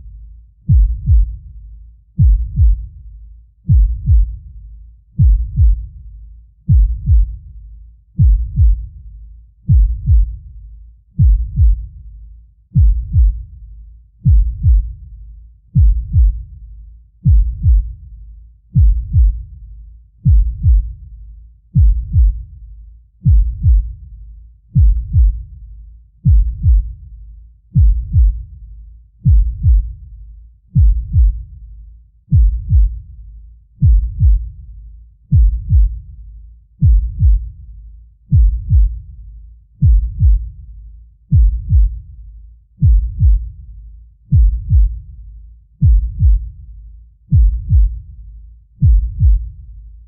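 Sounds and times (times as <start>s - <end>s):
heartbeat thumps: 0.6s - 1.6s, 2.2s - 3.0s, 3.6s - 4.5s, 5.2s - 6.0s, 6.7s - 7.5s, 8.2s - 9.0s, 9.7s - 10.5s, 11.2s - 12.0s, 12.7s - 13.5s, 14.2s - 15.0s, 15.7s - 16.6s, 17.2s - 18.0s, 18.7s - 19.6s, 20.2s - 21.0s, 21.7s - 22.5s, 23.2s - 24.0s, 24.7s - 25.5s, 26.2s - 27.0s, 27.7s - 28.6s, 29.2s - 30.0s, 30.7s - 31.6s, 32.3s - 33.1s, 33.8s - 34.7s, 35.3s - 36.1s, 36.8s - 37.7s, 38.3s - 39.1s, 39.8s - 40.7s, 41.3s - 42.1s, 42.8s - 43.7s, 44.3s - 45.1s, 45.8s - 48.1s, 48.8s - 49.7s.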